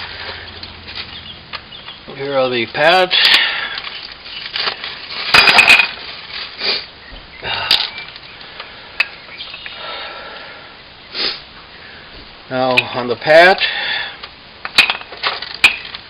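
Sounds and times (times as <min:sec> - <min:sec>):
metal brake pads clinking: 0:14.6 - 0:16.0.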